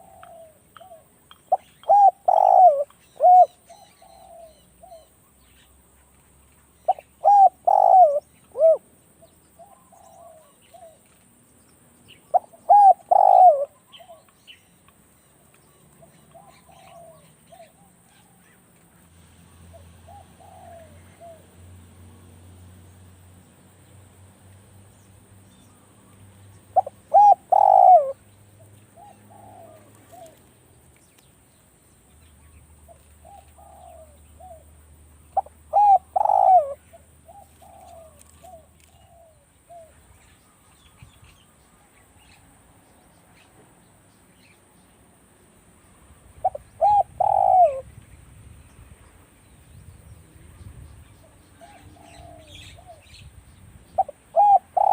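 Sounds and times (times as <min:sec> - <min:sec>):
doves cooing: 0:00.0 - 0:05.0, 0:06.9 - 0:08.8, 0:12.3 - 0:14.2, 0:20.1 - 0:21.4, 0:26.8 - 0:28.2, 0:29.0 - 0:30.4, 0:33.2 - 0:34.6, 0:35.4 - 0:40.0, 0:46.4 - 0:47.8, 0:51.6 - 0:53.1, 0:54.0 - 0:54.9.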